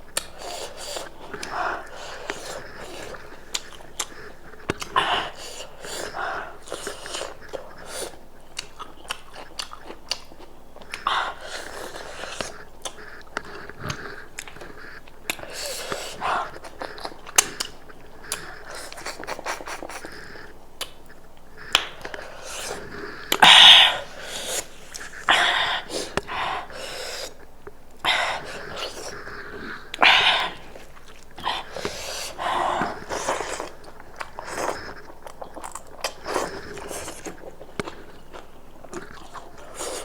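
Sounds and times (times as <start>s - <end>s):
chewing and biting meat: 0.1s - 23.4s, 28.4s - 40.0s
wet mouth clicks: 11.6s - 26.3s.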